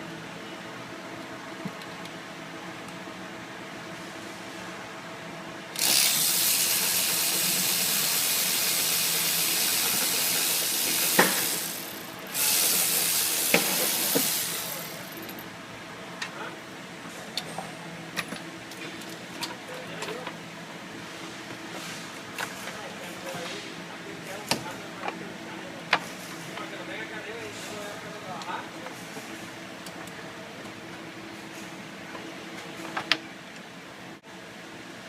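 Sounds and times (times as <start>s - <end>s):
pressurized spray hissing: 5.9s - 15.0s.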